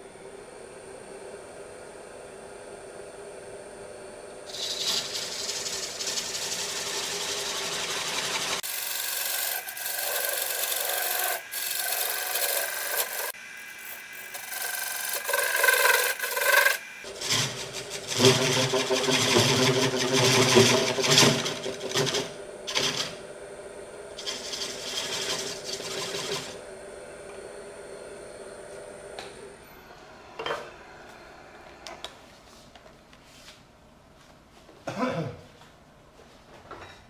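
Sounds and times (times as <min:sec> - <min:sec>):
lathe tool cutting wood: 0:04.5 - 0:23.0, 0:24.2 - 0:26.6.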